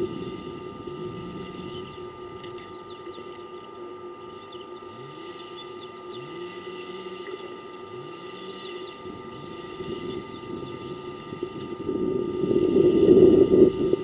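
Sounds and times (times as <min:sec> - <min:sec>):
small birds chirping: 0:01.4 - 0:03.4, 0:04.3 - 0:06.4, 0:08.0 - 0:11.2.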